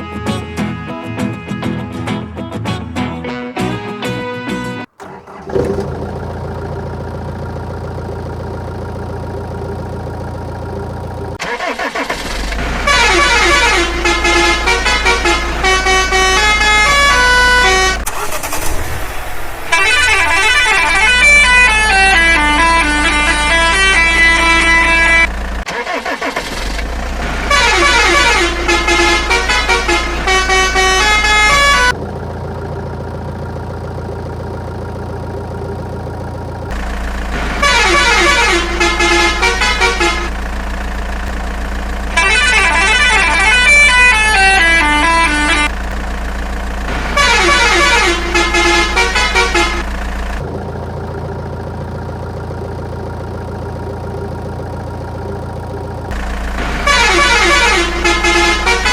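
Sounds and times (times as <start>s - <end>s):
low hum: 5.0s - 11.4s, 28.5s - 58.8s
electronic horn-like melody: 12.8s - 18.0s, 19.7s - 25.3s, 27.5s - 32.0s, 37.6s - 40.3s, 42.1s - 45.7s, 47.0s - 49.8s, 56.8s - 58.9s.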